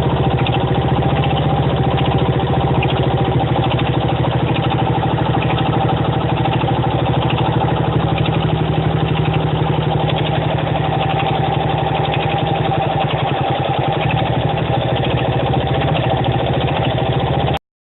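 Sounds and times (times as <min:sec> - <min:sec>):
engine knocking: 0:00.0 - 0:17.6
motorcycle engine running: 0:00.0 - 0:17.6.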